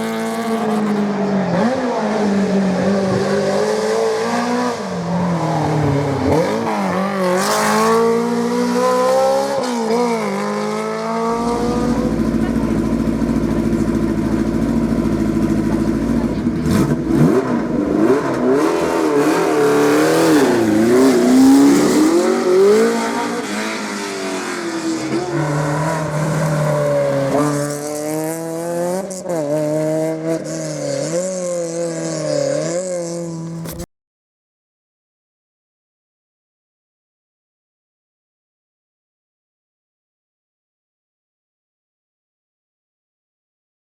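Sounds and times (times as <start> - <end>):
rally car engines revving: 0.0 - 33.9.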